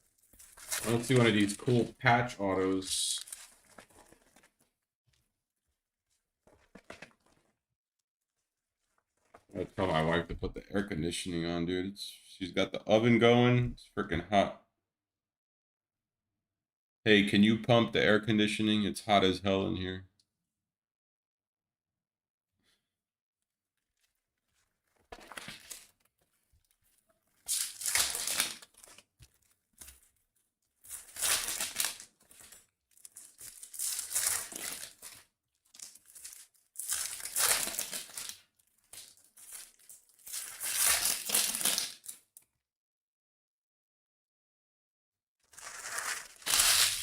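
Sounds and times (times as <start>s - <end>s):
plastic wrapping crinkling and tearing: 0.0s - 4.8s, 24.0s - 42.4s, 45.4s - 47.0s.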